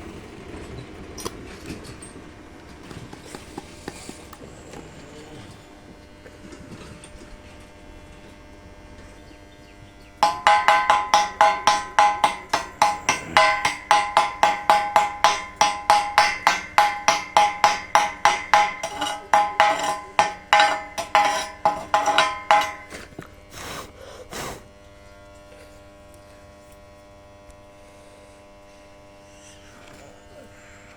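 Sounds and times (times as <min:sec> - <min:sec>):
hammer striking metal pipe: 0:10.2 - 0:23.1
metal scraping strokes: 0:10.2 - 0:23.1.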